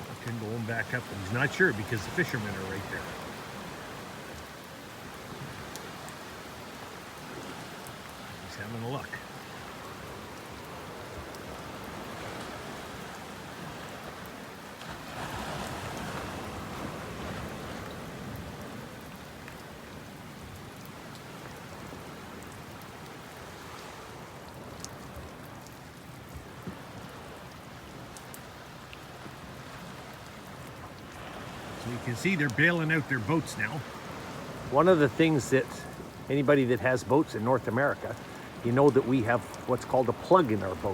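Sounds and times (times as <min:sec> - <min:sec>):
faint raindrop ticks: 0:00.0 - 0:40.9
steady rain: 0:00.0 - 0:40.9.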